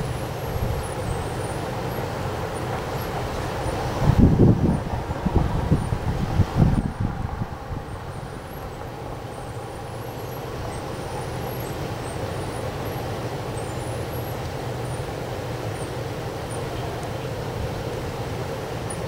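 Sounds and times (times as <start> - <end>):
strong wind rushing: 3.2 - 9.2.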